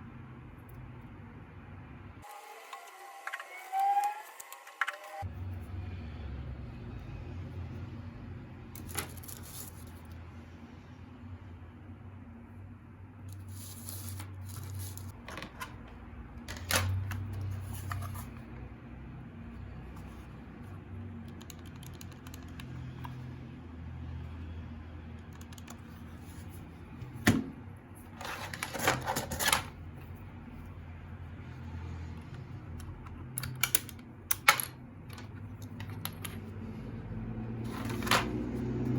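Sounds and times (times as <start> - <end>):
mechanical keyboard keys clicking: 21.2 - 22.8, 25.3 - 25.8.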